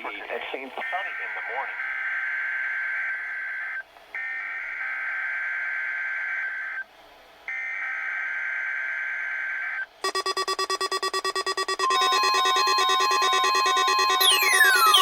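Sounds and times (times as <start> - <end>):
weather radio alarm beeping: 0.7 - 6.8, 10.0 - 15.0
digital data tones: 10.0 - 15.0.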